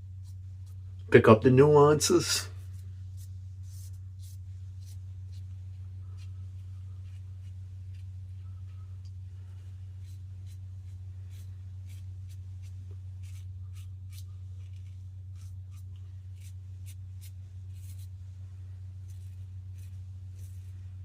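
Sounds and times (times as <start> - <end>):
steady low hum: 0.0 - 21.0
razor scraping stubble: 2.6 - 8.9, 9.9 - 18.2, 19.0 - 21.0.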